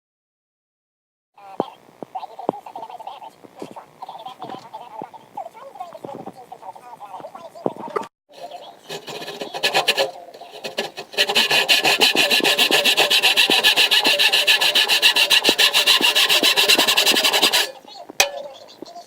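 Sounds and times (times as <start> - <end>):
saw cutting into wood: 8.3 - 18.4.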